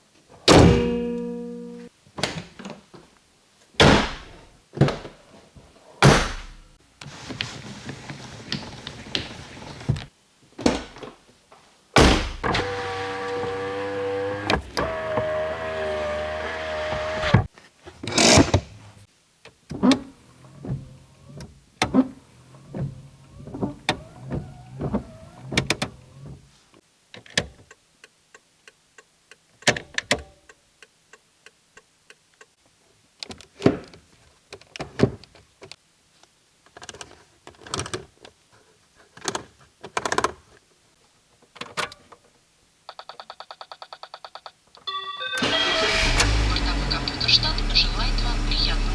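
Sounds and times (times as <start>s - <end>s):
car doors shutting: 0.5s - 1.8s, 12.0s - 17.5s, 19.7s - 26.4s, 45.3s - 48.9s.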